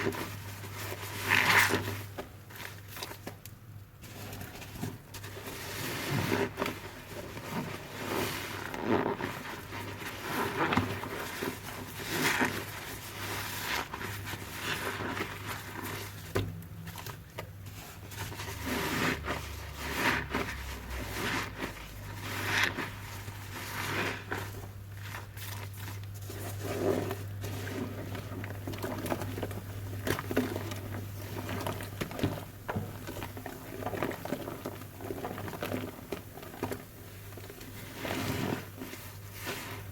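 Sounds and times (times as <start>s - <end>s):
soapy sponge squelching: 0.0s - 39.9s.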